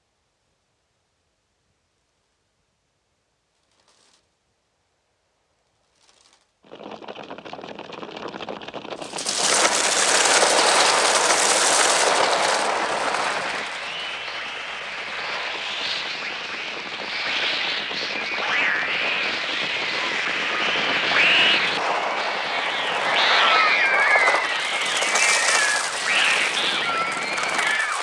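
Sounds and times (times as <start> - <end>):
crows wingbeats and caws: 20.0 - 28.0
children screaming: 20.5 - 28.0.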